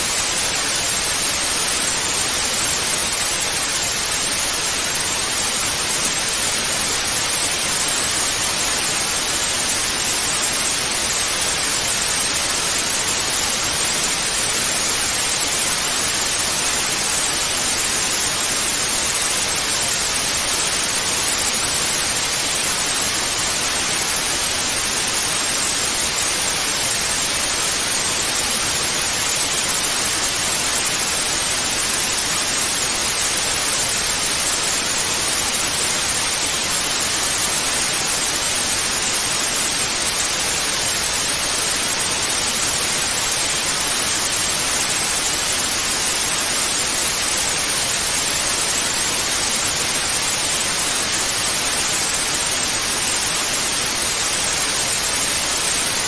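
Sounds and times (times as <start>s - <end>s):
television static hiss: 0.0s - 56.0s.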